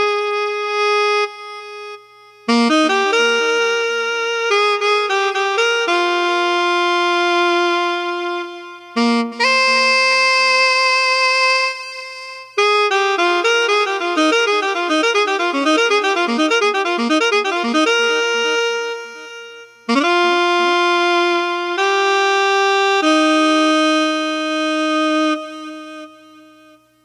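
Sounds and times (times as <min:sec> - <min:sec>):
sampler playing notes: 0:13.0 - 0:19.1.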